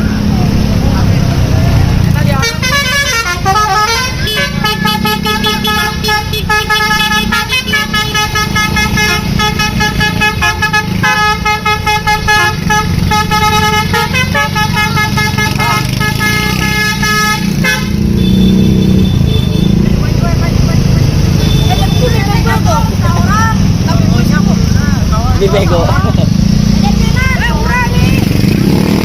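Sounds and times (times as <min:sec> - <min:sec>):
musical bus horn melody: 0:02.3 - 0:19.8
low engine rumble: 0:19.0 - 0:28.6.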